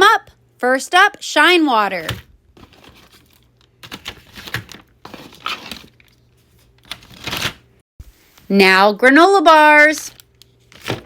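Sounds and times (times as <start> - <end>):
snack bags crinkling: 2.0 - 7.6.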